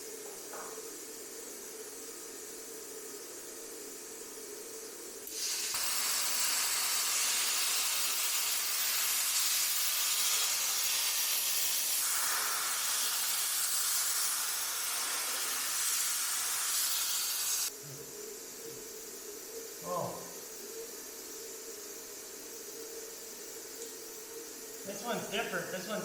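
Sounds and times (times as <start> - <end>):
pressurised air hissing: 5.2 - 18.2.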